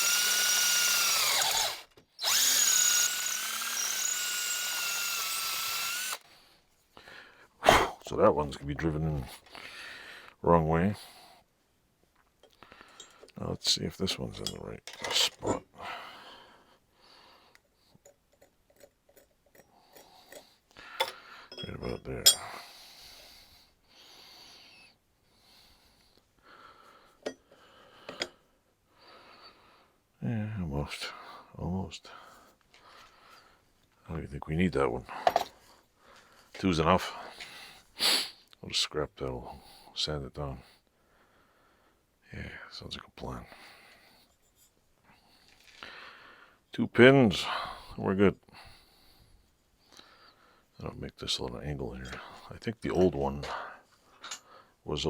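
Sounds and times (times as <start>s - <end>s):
electric drill whining: 0.0s - 6.2s
close breathing: 6.2s - 8.1s, 9.3s - 11.5s, 12.5s - 13.4s, 15.7s - 18.0s, 19.6s - 21.6s, 22.4s - 30.0s, 32.1s - 33.8s, 35.1s - 36.6s, 40.6s - 42.1s, 43.4s - 46.7s, 47.4s - 50.8s, 53.4s - 54.8s.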